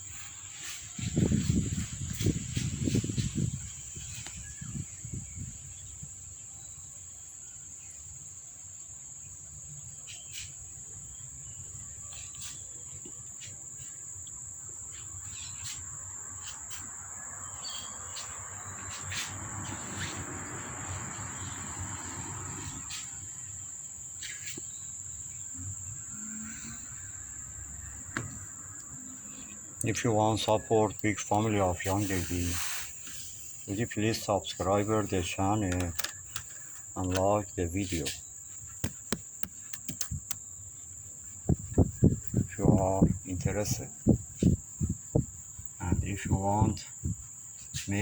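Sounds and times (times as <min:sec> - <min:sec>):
soft rustling: 0:30.3 - 0:42.5
sharp little clicks: 0:35.6 - 0:37.3, 0:38.8 - 0:40.5.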